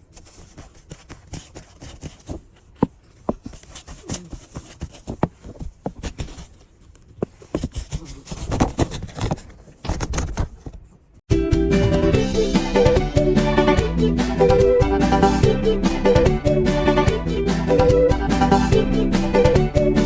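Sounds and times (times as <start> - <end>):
kitten paws tapping and scratching: 0.0 - 11.2.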